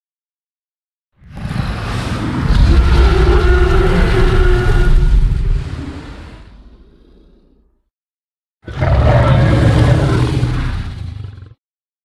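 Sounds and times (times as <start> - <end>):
deep dinosaur roar: 1.2 - 7.8, 8.6 - 11.6.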